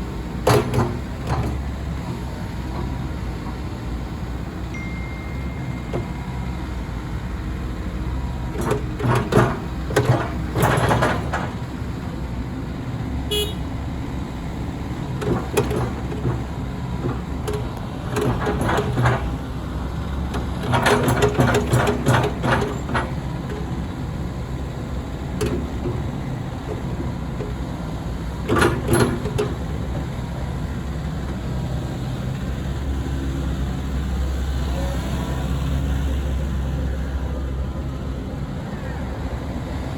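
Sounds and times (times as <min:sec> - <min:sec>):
excavator diesel engine running: 0:00.0 - 0:39.9
clattering and knocking: 0:00.4 - 0:01.8, 0:08.5 - 0:11.8, 0:15.2 - 0:19.5, 0:20.3 - 0:23.9, 0:28.3 - 0:30.1.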